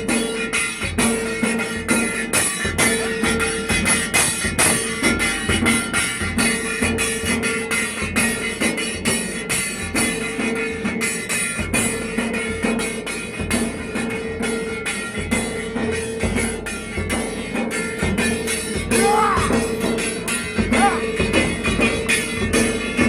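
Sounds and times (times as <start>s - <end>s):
dhol drums beating fast: 0.0s - 23.0s
held higher tone: 18.0s - 22.5s.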